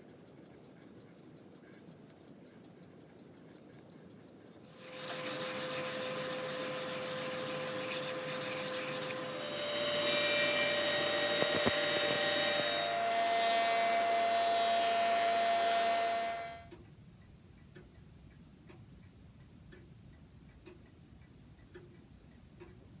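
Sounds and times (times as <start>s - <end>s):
steady rubbing on wood: 0.0s - 13.2s
hand tool rasping wood: 4.7s - 16.6s.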